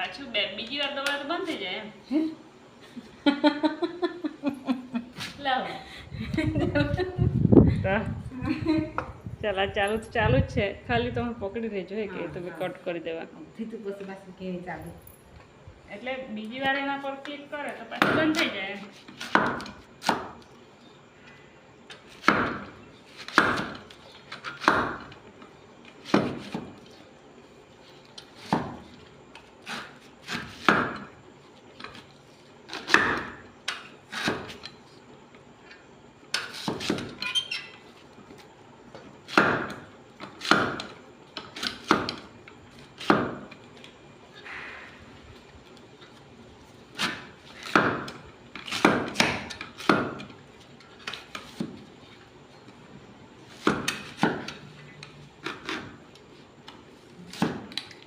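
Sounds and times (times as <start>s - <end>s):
knife chopping on cutting board: 19.2s - 20.4s, 22.1s - 25.2s, 26.0s - 26.8s, 29.7s - 31.1s, 39.3s - 41.0s, 41.6s - 42.3s, 42.9s - 43.6s, 46.9s - 50.3s, 53.5s - 54.6s, 55.4s - 56.0s.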